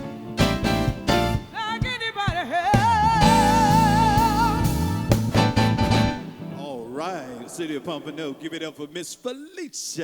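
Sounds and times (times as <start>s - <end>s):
live soul band playing: 0.0s - 6.6s.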